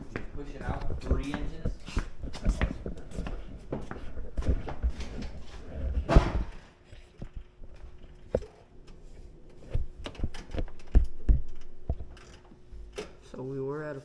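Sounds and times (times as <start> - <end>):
knocks and thumps: 0.6 - 6.6, 9.7 - 12.2.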